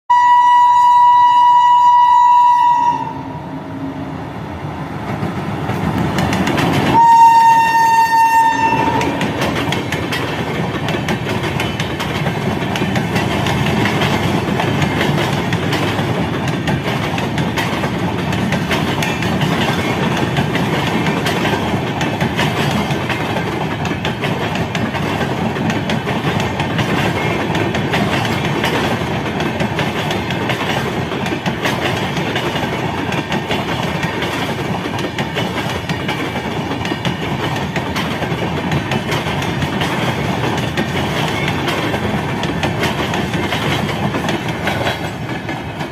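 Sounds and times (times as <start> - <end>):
train air horn: 0.1 - 4.0, 6.9 - 9.3
train wheels rumbling on track: 0.1 - 45.9.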